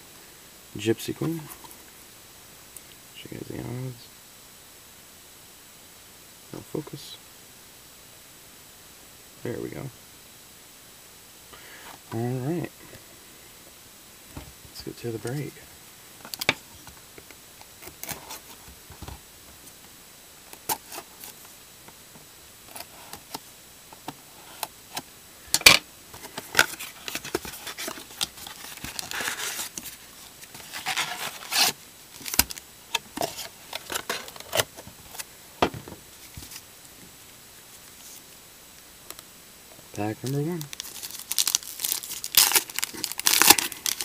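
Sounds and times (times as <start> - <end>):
wrapper tearing and crinkling: 26.3 - 32.6, 33.2 - 34.7, 40.2 - 44.0.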